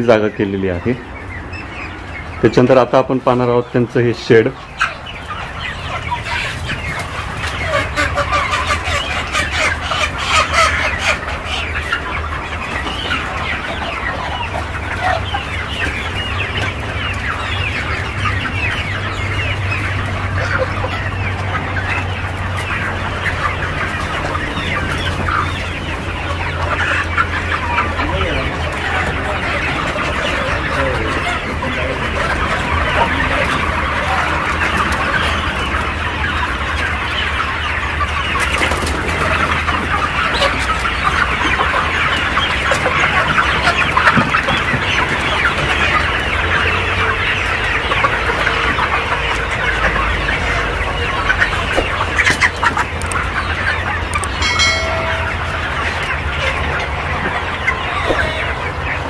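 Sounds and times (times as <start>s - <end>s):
flock of chickens clucking: 0.0s - 59.0s
long pitched chicken call: 52.3s - 59.0s.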